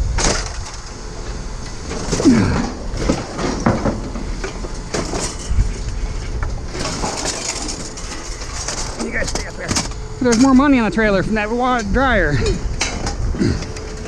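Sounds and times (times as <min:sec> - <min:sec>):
yard noise: 0:00.0 - 0:14.0
scrap metal clanking: 0:00.2 - 0:10.8.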